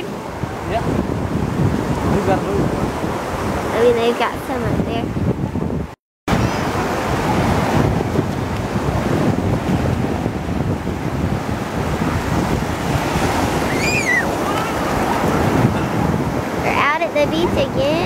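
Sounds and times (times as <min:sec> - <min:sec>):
ocean surf washing ashore: 0:00.0 - 0:18.0
wind buffeting microphone: 0:00.0 - 0:18.0
high call rising and falling: 0:13.5 - 0:15.8.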